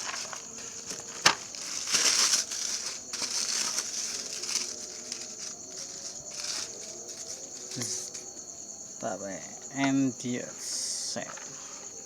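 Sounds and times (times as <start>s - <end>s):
plastic packaging crinkling: 0.0s - 8.2s.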